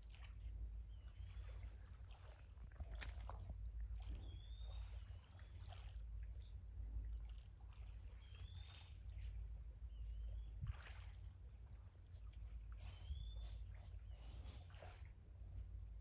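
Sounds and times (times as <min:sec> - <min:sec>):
small water splashes: 0:00.0 - 0:13.3
low steady rumble: 0:00.0 - 0:16.0
water trickling around a kayak: 0:00.0 - 0:16.0.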